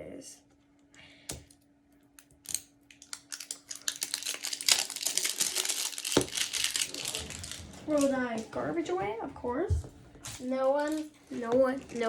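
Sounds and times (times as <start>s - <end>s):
plastic package crinkling: 2.9s - 9.0s, 10.2s - 12.0s.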